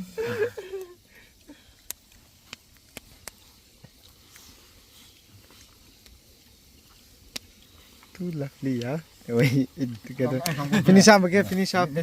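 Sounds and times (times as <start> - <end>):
faint sharp clicks: 0.8 - 3.4.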